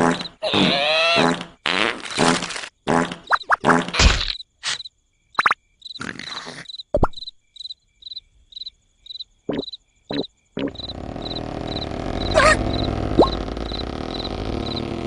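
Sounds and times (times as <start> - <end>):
cricket chirps: 2.0 - 15.0
loud rough snore: 10.9 - 15.0.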